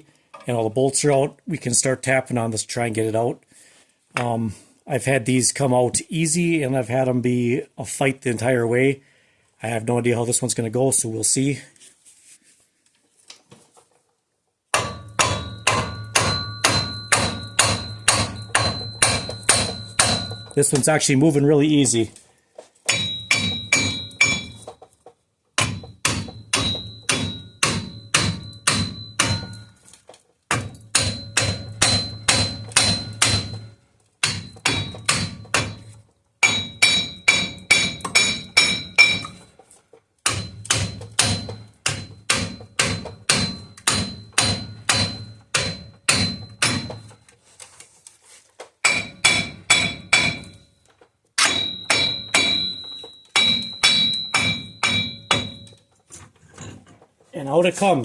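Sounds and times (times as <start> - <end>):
hammer blows on ringing metal: 14.8 - 20.9.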